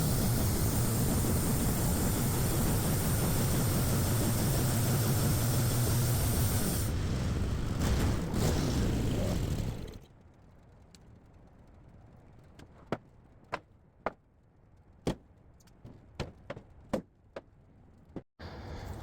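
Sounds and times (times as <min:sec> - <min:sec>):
sawmill noise: 0:00.0 - 0:10.0.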